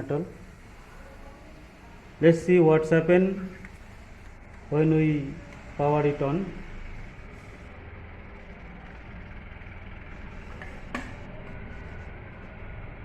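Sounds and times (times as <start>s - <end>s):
low hum and hiss: 0.0s - 13.0s.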